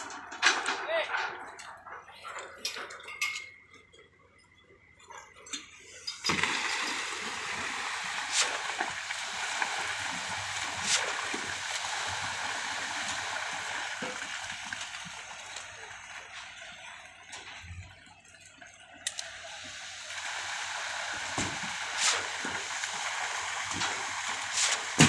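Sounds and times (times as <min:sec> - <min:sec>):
liquid rushing and splashing: 0:06.2 - 0:16.5, 0:19.3 - 0:25.0.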